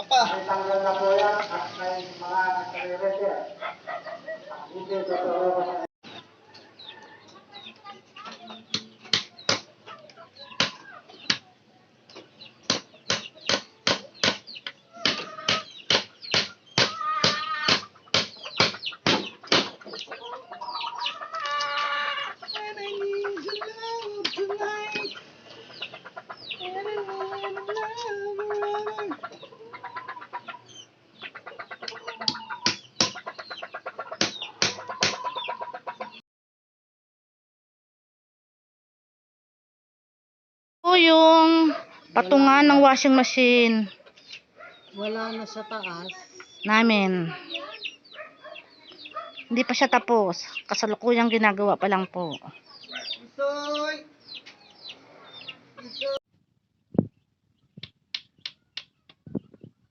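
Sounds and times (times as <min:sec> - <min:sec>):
sharp knocks: 0:12.7 - 0:14.4, 0:15.0 - 0:19.8, 0:32.3 - 0:33.2, 0:34.2 - 0:35.2
fowl-like calls: 0:14.8 - 0:36.2.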